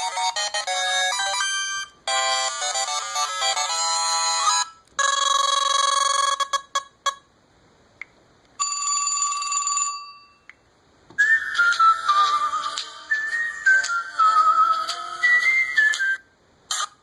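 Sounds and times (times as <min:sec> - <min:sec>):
whistle-like melody: 0:11.2 - 0:16.3.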